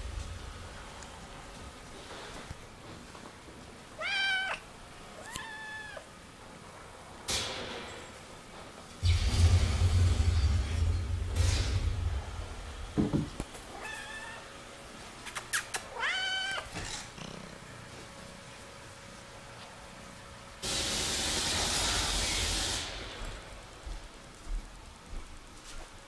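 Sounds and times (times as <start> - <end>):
steady hissing noise: 0.0 - 16.0, 16.6 - 26.0
kitten meowing: 4.0 - 4.6, 5.2 - 6.1, 15.9 - 16.7.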